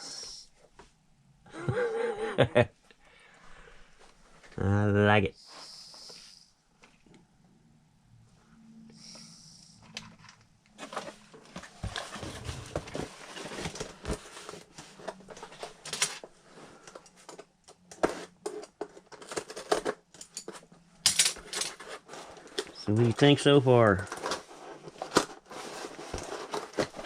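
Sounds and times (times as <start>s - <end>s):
plastic packaging rustling: 10.8s - 16.3s, 21.2s - 27.0s.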